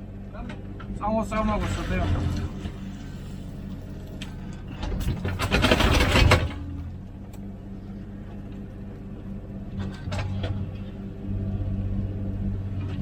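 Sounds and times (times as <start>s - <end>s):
diesel engine running: 0.0s - 13.0s
rough scraping noise: 1.5s - 3.6s.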